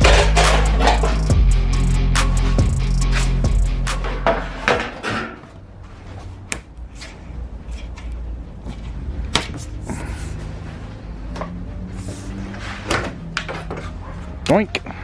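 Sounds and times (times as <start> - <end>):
background music: 0.0 - 5.1, 10.2 - 15.0.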